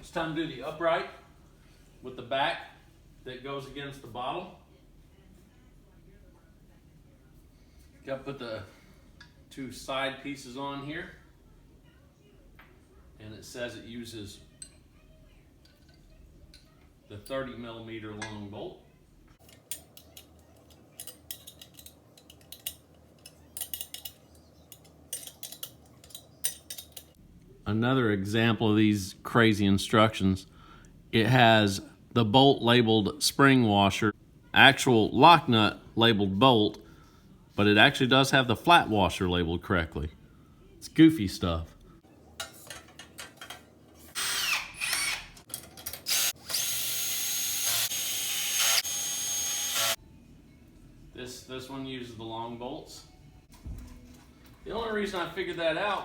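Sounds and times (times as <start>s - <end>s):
metal hardware clinking: 19.4s - 27.2s, 42.4s - 44.2s
power drill driving a bolt: 44.1s - 50.0s.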